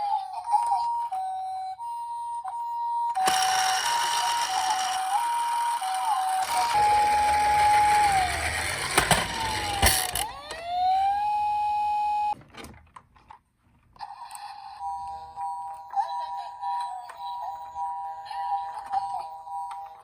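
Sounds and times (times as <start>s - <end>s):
toy siren wailing: 0.3s - 12.4s
two-tone siren: 9.6s - 12.4s.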